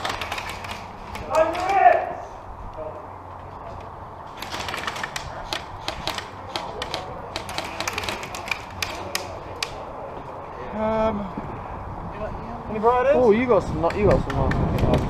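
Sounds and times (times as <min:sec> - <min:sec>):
airsoft gunfire: 0:04.4 - 0:09.8.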